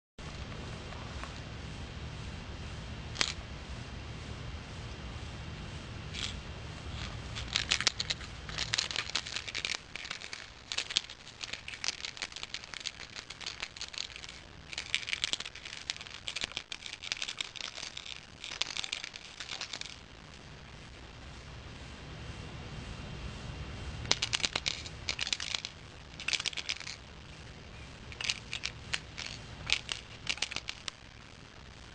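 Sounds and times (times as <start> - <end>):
loose parts rattling in a case: 6.2 - 20.0, 24.1 - 27.1, 28.1 - 31.1.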